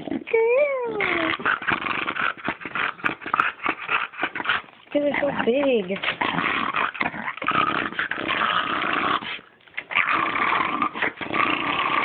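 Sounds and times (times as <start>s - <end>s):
dogs growling: 0.0s - 12.0s.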